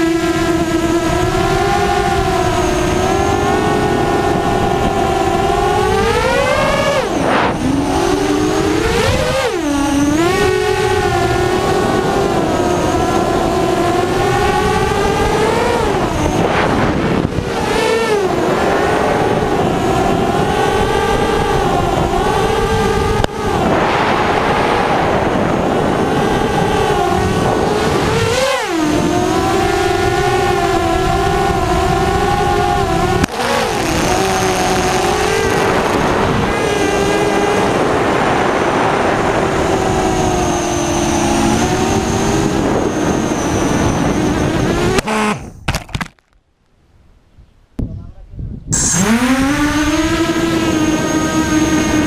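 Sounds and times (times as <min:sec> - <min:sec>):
motor running at high speed: 0:00.0 - 0:46.2, 0:48.7 - 0:52.0.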